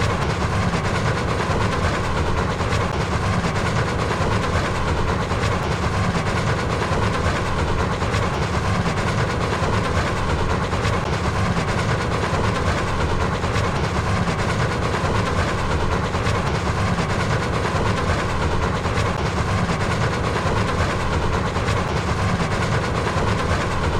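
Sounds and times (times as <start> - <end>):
clickety-clack of train: 0.0 - 23.9
train wheels rumbling on rails: 0.0 - 23.9.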